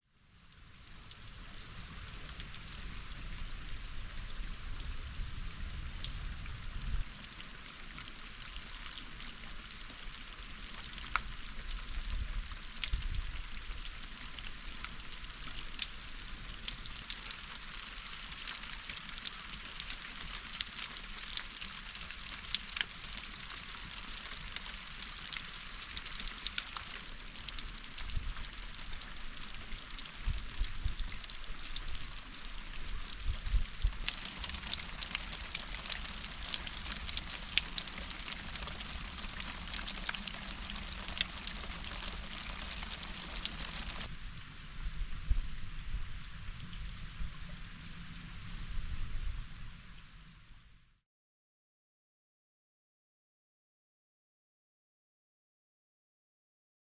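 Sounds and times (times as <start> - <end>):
stream splashing over boulder: 33.9 - 44.1
water drips: 33.9 - 44.1.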